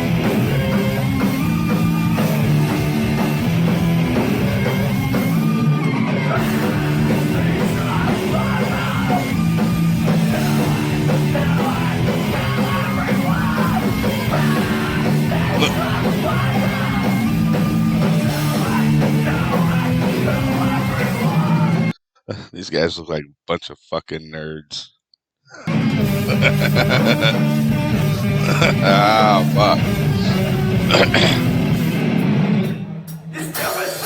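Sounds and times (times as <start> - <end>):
heavy metal music: 0.0 - 21.9, 25.7 - 34.0.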